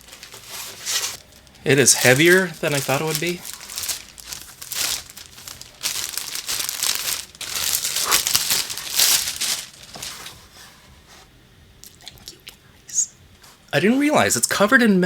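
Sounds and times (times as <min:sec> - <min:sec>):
plastic wrapping crinkling: 0:00.0 - 0:10.5.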